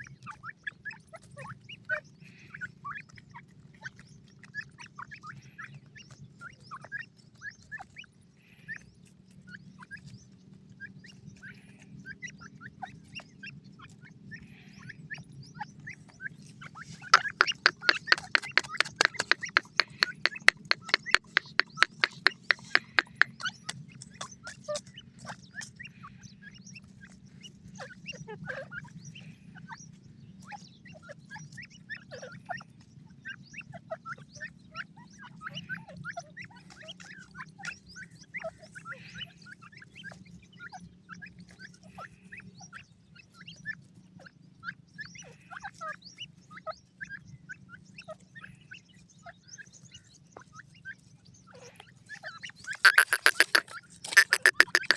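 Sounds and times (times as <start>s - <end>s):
chicks peeping and cheeping: 0.0s - 54.9s
sharp ticking feeding call: 17.0s - 23.6s, 52.7s - 54.9s.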